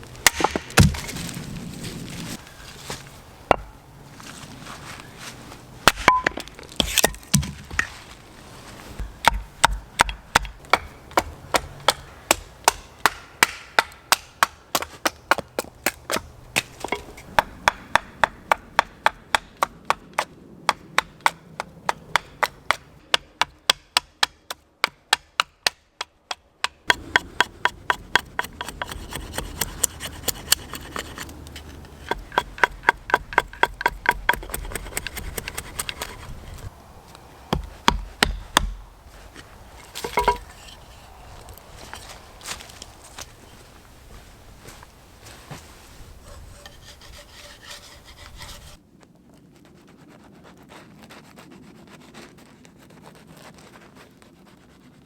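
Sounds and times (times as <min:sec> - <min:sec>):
chopping strikes on wood: 0:00.2 - 0:01.1, 0:05.9 - 0:07.9, 0:09.0 - 0:30.0, 0:37.5 - 0:38.8.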